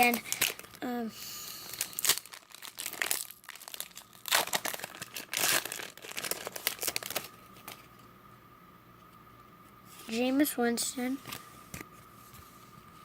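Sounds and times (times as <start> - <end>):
foil wrapper crinkling and tearing: 0.0 - 8.0.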